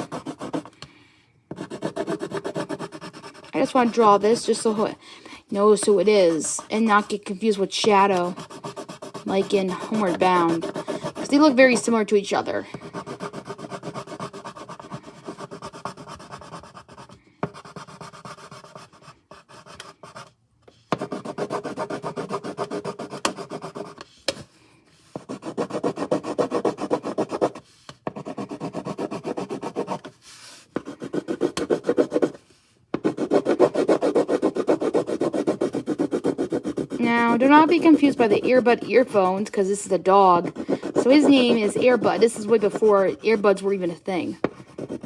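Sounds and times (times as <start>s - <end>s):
pencil shading on paper: 0.0s - 0.7s, 1.5s - 5.0s, 5.6s - 12.0s, 12.7s - 20.3s, 20.9s - 24.0s, 25.1s - 32.4s, 33.0s - 45.0s.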